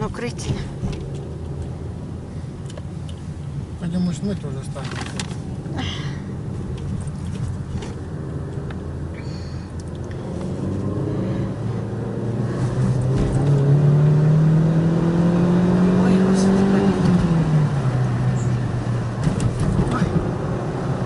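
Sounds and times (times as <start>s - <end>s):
car engine accelerating: 6.5s - 21.0s.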